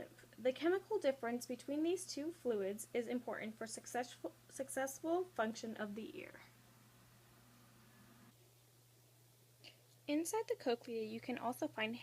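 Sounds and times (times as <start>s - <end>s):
faint low hum: 0.0s - 12.0s.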